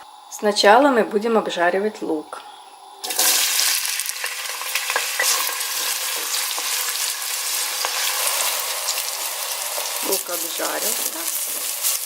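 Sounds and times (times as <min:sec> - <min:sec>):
onion sizzling in oil: 0:03.0 - 0:12.0.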